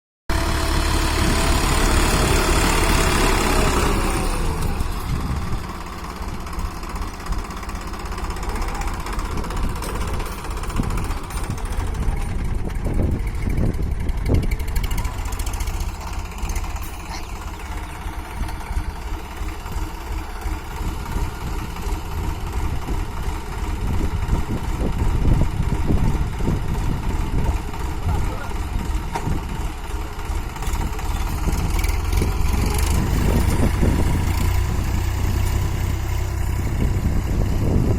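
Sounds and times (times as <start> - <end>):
tractor diesel engine running: 0.3 - 37.9.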